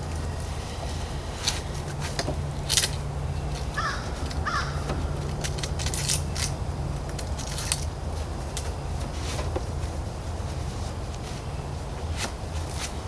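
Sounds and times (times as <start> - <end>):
steady low hum: 0.0 - 13.0
handling clicks and rustles: 1.4 - 11.4
bird cawing: 3.7 - 5.3.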